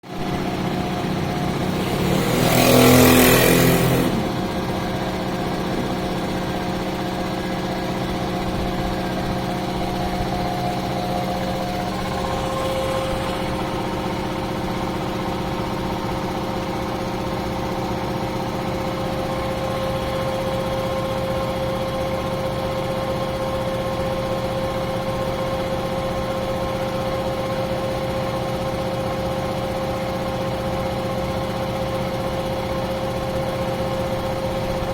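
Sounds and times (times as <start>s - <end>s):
air compressor humming: 0.2s - 16.5s.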